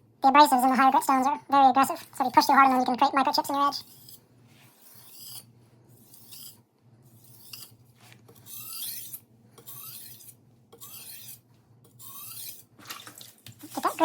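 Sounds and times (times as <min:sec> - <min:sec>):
knife scraping on whetstone: 0:03.8 - 0:12.7.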